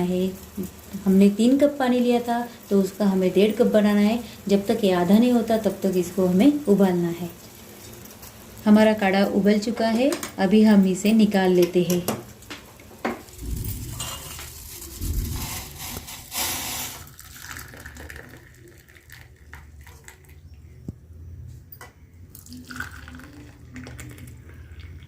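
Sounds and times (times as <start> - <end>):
metal utensils clinking: 13.6 - 17.0.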